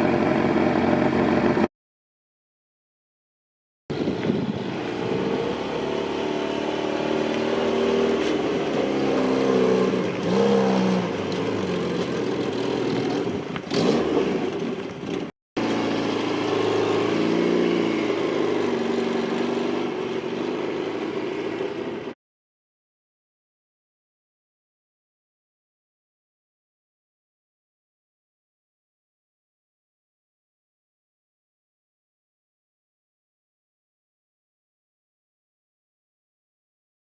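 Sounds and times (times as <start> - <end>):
car engine running: 0.0 - 1.7.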